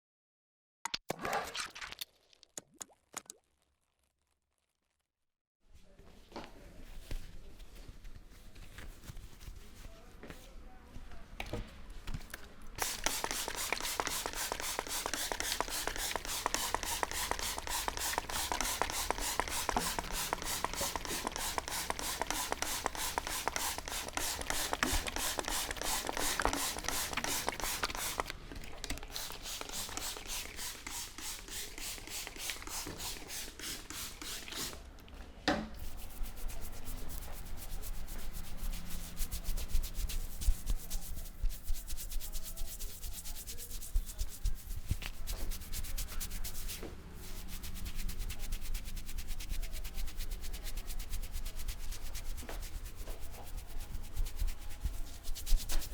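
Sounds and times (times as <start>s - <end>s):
hands rubbing hair: 12.8s - 34.8s, 35.8s - 55.9s.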